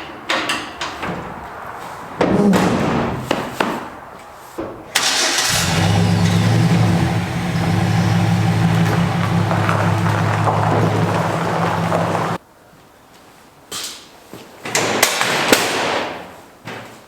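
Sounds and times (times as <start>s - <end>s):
engine starting and running: 5.0s - 12.4s
handling knocks: 6.2s - 12.4s.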